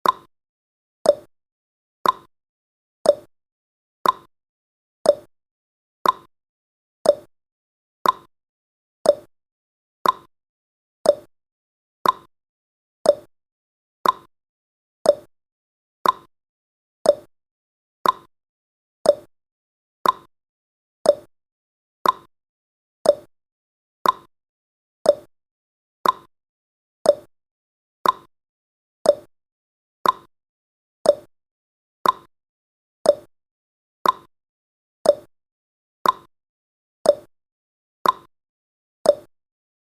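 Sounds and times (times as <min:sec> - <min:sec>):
clock ticking: 0:02.0 - 0:02.3, 0:04.0 - 0:04.3, 0:06.0 - 0:06.3, 0:08.0 - 0:08.3, 0:10.0 - 0:10.3, 0:12.0 - 0:12.3, 0:14.0 - 0:14.3, 0:16.0 - 0:16.3, 0:18.0 - 0:18.3, 0:20.0 - 0:20.3, 0:21.1 - 0:21.3, 0:22.0 - 0:22.3, 0:24.0 - 0:24.3, 0:26.0 - 0:26.3, 0:28.0 - 0:28.3, 0:29.1 - 0:29.3, 0:30.0 - 0:30.3, 0:31.1 - 0:31.3, 0:32.0 - 0:32.3, 0:33.1 - 0:33.3, 0:34.0 - 0:34.3, 0:35.1 - 0:35.3, 0:36.0 - 0:36.3, 0:38.0 - 0:38.3.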